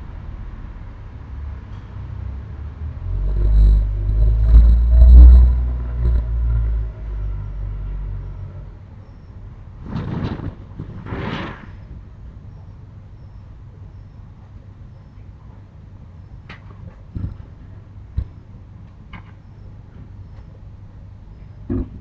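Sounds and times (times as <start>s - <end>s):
low rumble: 0.0s - 11.1s.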